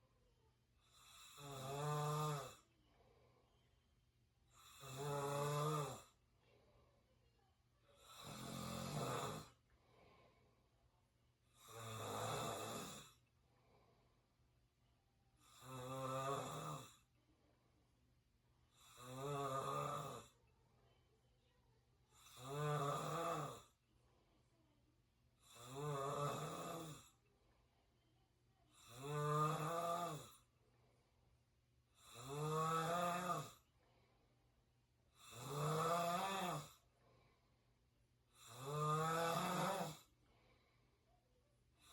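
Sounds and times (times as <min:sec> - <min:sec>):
quiet breathing: 0:00.0 - 0:41.9
person snoring: 0:00.9 - 0:02.6, 0:04.5 - 0:06.1, 0:08.0 - 0:09.6, 0:11.6 - 0:13.2, 0:15.4 - 0:17.0, 0:18.8 - 0:20.3, 0:22.2 - 0:23.7, 0:25.4 - 0:27.1, 0:28.8 - 0:30.4, 0:32.0 - 0:33.6, 0:35.2 - 0:36.8, 0:38.4 - 0:40.1.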